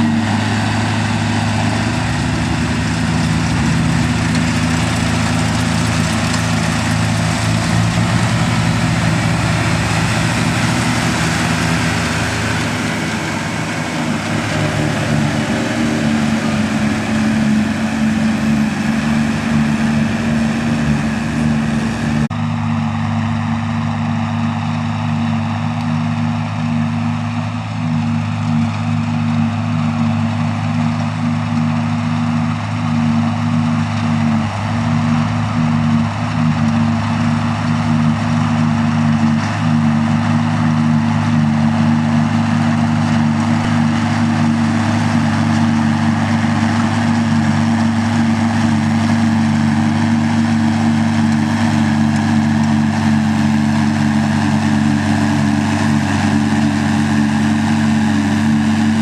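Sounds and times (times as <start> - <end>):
mechanical rush: 0.0 - 22.3
tractor engine running: 0.0 - 59.0.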